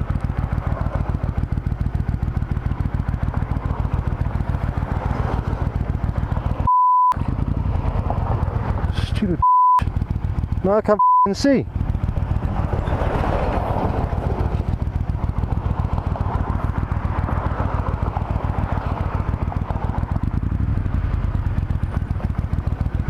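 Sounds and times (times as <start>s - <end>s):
motorcycle engine running: 0.0s - 23.0s.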